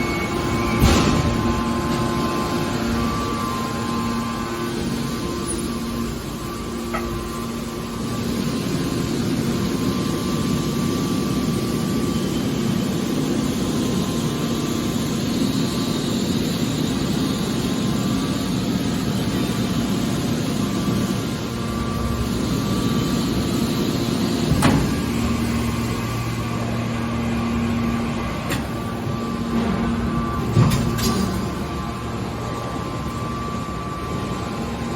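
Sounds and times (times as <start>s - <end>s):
hydraulic pump humming: 0.0s - 11.5s, 18.5s - 34.9s.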